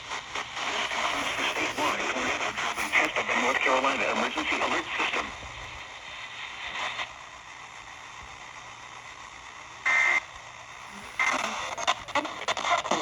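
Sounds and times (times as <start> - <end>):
radio hiss: 0.0 - 9.1, 9.8 - 13.0
radio broadcast audio: 0.6 - 5.8, 10.8 - 13.0.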